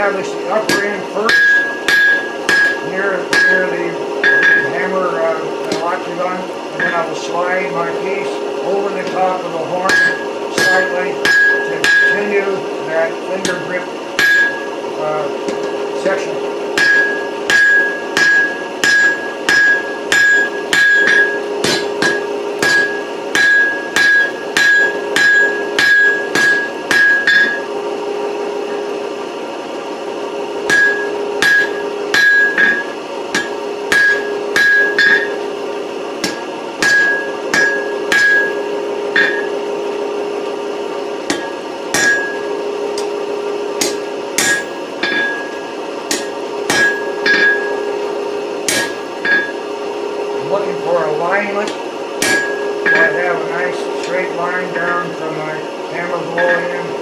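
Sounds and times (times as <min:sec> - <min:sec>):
steady hum: 0:00.0 - 0:57.0
hammer striking hot steel on anvil: 0:00.6 - 0:04.9, 0:06.8 - 0:07.1, 0:08.8 - 0:12.4, 0:13.4 - 0:14.7, 0:15.4 - 0:15.8, 0:16.7 - 0:27.7, 0:30.6 - 0:35.6, 0:36.2 - 0:39.7, 0:41.2 - 0:43.2, 0:43.8 - 0:49.6, 0:51.6 - 0:53.4, 0:56.4 - 0:56.8.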